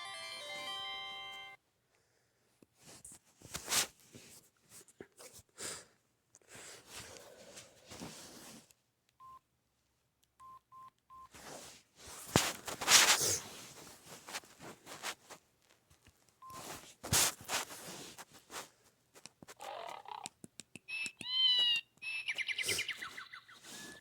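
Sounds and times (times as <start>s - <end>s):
rustling handling noise: 2.7s - 5.4s, 6.5s - 8.7s, 11.3s - 19.9s
phone keypad beeping: 20.9s - 22.7s.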